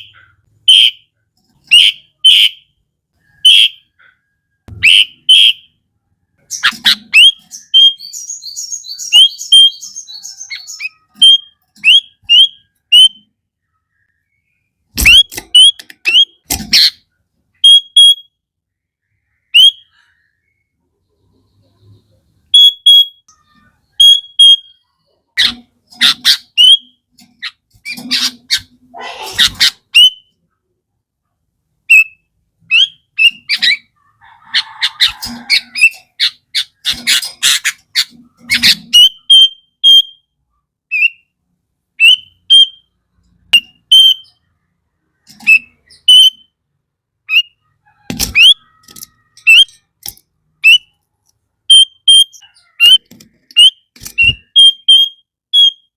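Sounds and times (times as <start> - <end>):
bird harsh chattering: 3.3 - 5.7, 6.5 - 13.2, 22.6 - 30.3, 31.9 - 40.1, 51.7 - 55.8
bird whistled calls: 53.6 - 55.9.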